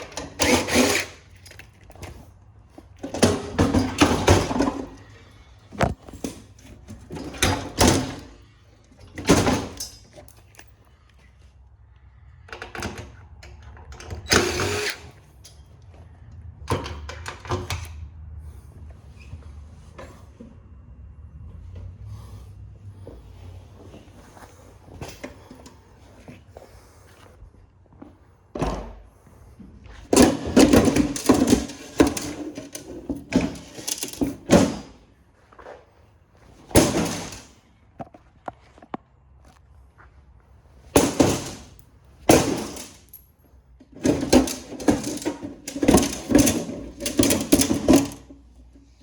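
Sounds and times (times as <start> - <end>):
printer parts knocking and clattering: 0.0 - 2.2, 2.9 - 5.1, 5.8 - 8.4, 9.0 - 10.2, 30.1 - 35.0, 36.7 - 37.6, 40.9 - 43.1, 43.8 - 48.5.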